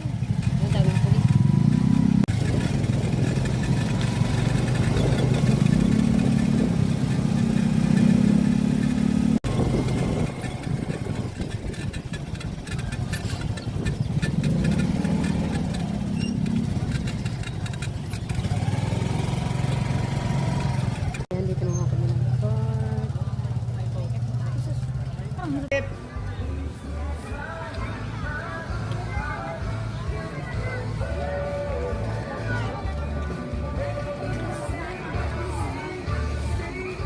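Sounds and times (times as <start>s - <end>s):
road noise: 0.0s - 37.0s
vehicle engine running: 0.0s - 37.0s.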